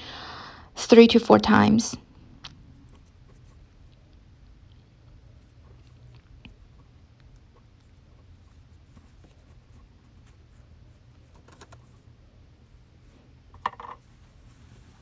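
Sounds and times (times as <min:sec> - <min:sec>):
hand sewing cloth: 0:05.3 - 0:12.0.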